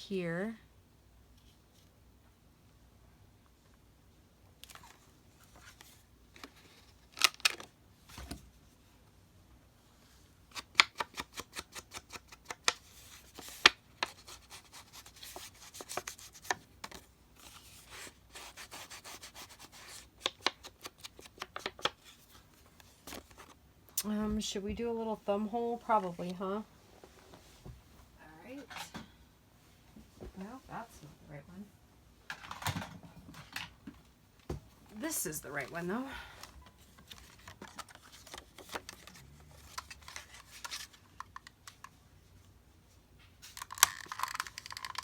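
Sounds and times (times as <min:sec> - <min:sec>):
paper rustling and rubbing: 0:11.4 - 0:23.6, 0:36.8 - 0:41.0.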